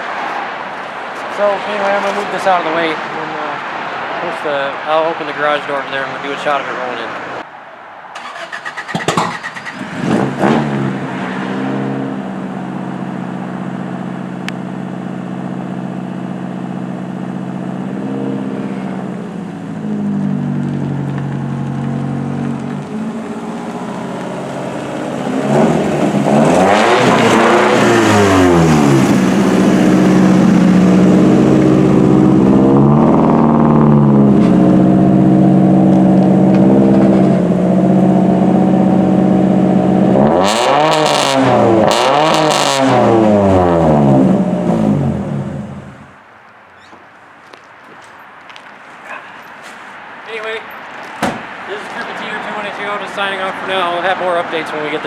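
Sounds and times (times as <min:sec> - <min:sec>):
car engine idling and revving: 0:08.2 - 0:46.2.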